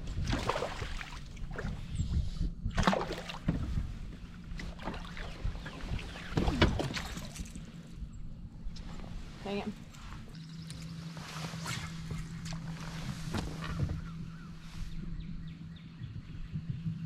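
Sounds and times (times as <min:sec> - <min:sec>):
steady low hum: 0:00.0 - 0:17.0
wind rumble on microphone: 0:00.0 - 0:17.0
water slapping against kayak hull: 0:00.1 - 0:01.8, 0:02.7 - 0:07.6.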